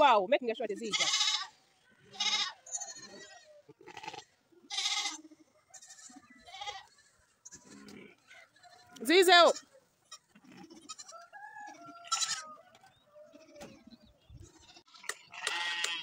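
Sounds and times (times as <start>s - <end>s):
livestock bleating: 0.7s - 16.0s.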